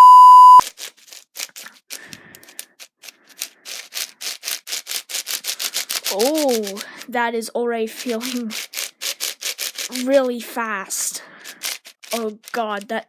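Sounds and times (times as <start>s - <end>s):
short loud beep: 0.0s - 0.6s
puzzle cube turning and clicking: 0.6s - 13.0s.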